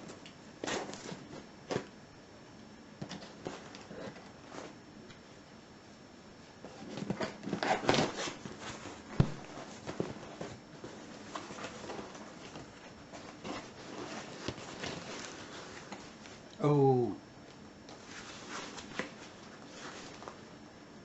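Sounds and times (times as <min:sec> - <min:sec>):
cardboard parcel rustling and scraping: 0:00.6 - 0:01.9, 0:03.0 - 0:04.8, 0:06.6 - 0:16.4, 0:17.9 - 0:20.4.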